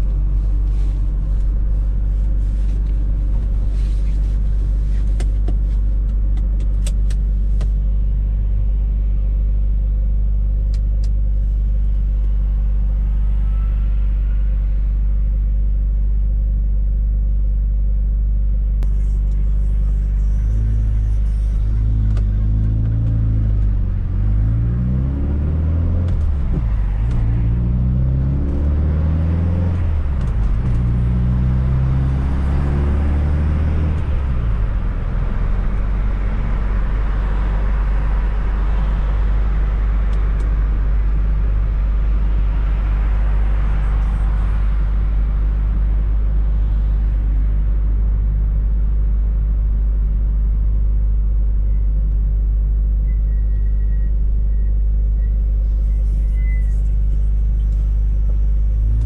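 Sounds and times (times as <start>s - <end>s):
road noise: 0.0s - 59.0s
car engine accelerating through gears: 18.8s - 48.2s, 57.5s - 59.0s.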